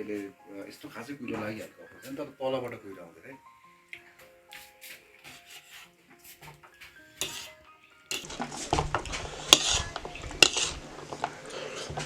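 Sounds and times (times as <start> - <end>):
quiet background music: 0.0 - 12.0
dishes and cutlery clattering: 5.2 - 12.0.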